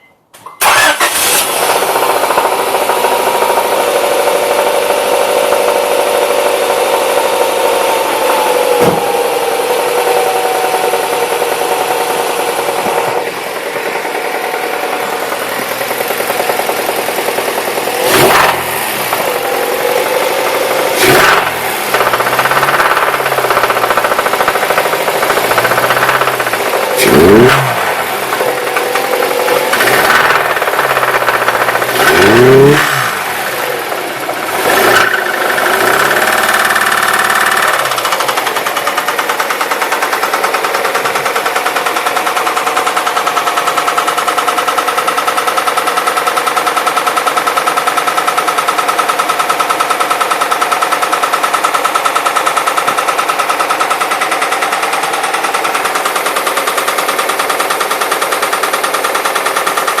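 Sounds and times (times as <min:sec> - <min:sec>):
rapid engine knocking: 0:01.7 - 1:00.0
car engine revving: 0:05.8 - 0:38.8.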